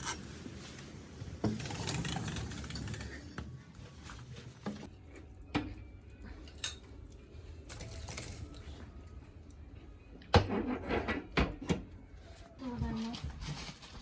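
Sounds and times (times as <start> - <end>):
dishes and cutlery clinking: 6.4 - 7.1.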